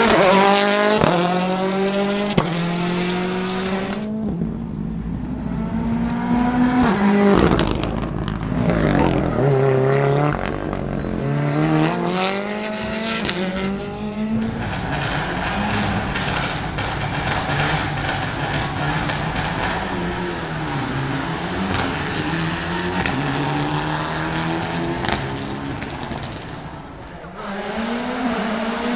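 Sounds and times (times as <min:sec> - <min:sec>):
rally car engine revving: 0:00.0 - 0:28.9
sharp cracks: 0:13.2 - 0:23.2.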